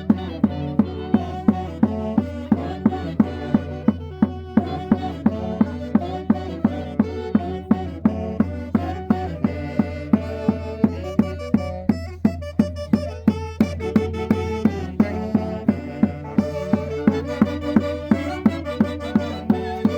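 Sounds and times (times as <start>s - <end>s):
drum striking steadily: 0.0s - 19.9s
sustained melody instruments: 12.2s - 19.9s.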